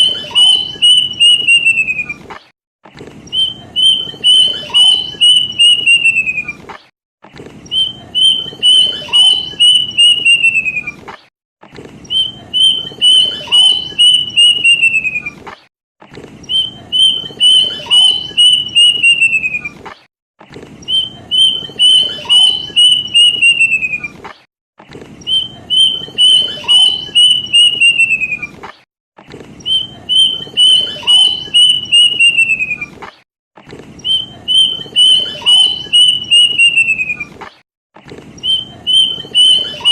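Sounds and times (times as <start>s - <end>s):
cuckoo whistled song: 0.0s - 2.2s, 3.3s - 6.6s, 7.7s - 11.0s, 12.1s - 15.4s, 16.4s - 19.8s, 20.8s - 24.2s, 25.2s - 28.6s, 29.6s - 33.0s, 34.0s - 37.4s, 38.4s - 39.9s.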